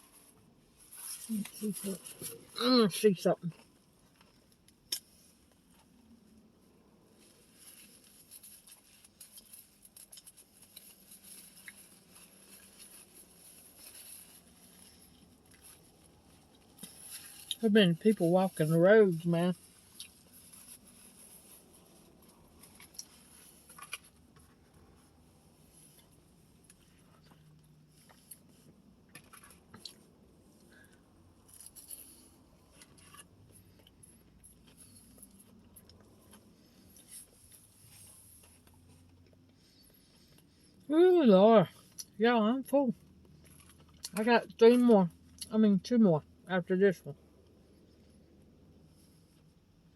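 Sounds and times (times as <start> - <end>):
chewing and food handling: 7.2 - 18.1, 19.6 - 40.7, 43.0 - 44.6
chewing food: 43.2 - 44.2.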